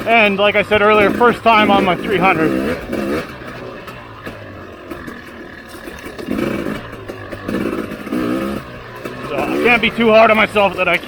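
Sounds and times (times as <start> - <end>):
motorcycle engine revving: 0.0 - 11.0.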